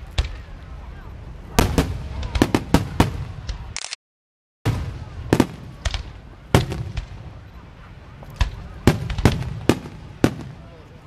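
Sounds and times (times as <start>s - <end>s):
fireworks banging with echo: 1.5s - 3.7s, 4.7s - 10.9s.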